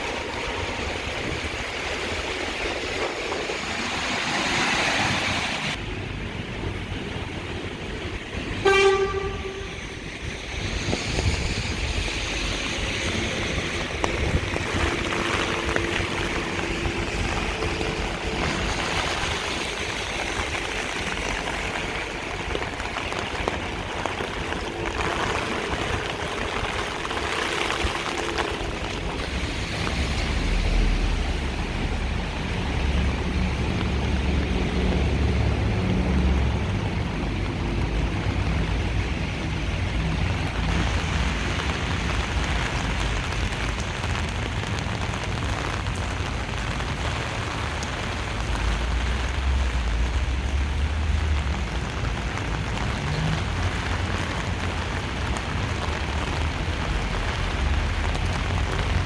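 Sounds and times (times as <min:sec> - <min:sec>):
steady rain: 0:00.0 - 0:59.0
traffic noise: 0:00.0 - 0:59.0
car horn toot: 0:08.6 - 0:09.8.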